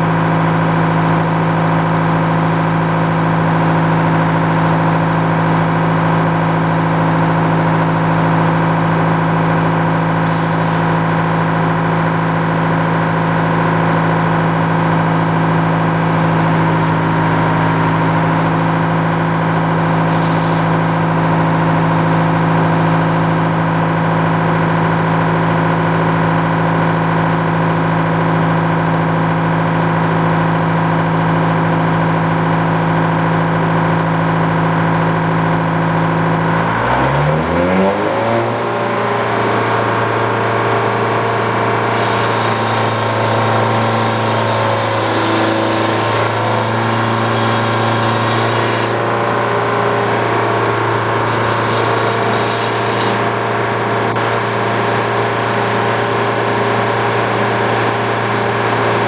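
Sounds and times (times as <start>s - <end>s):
sawmill engine running: 0.0s - 24.2s, 36.3s - 59.0s.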